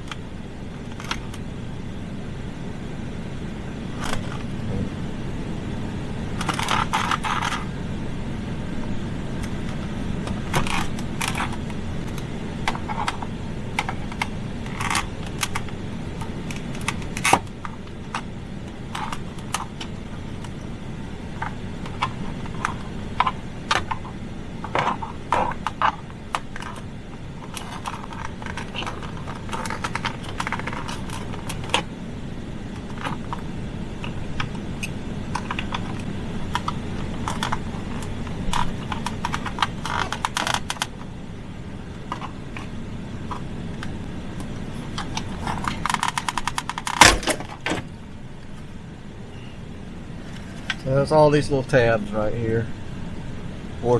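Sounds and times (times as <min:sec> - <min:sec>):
steady low hum: 0:00.0 - 0:53.9
hand tools clicking on plastic: 0:27.4 - 0:31.9, 0:34.0 - 0:41.0, 0:43.3 - 0:47.8.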